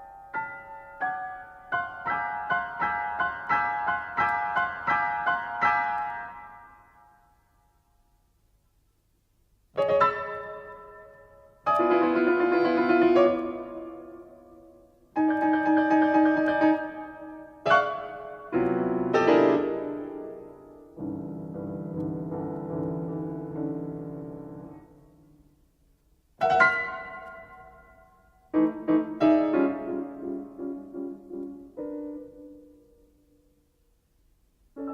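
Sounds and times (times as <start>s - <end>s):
solo piano chords: 0.0s - 7.5s, 9.7s - 25.7s, 26.4s - 33.8s.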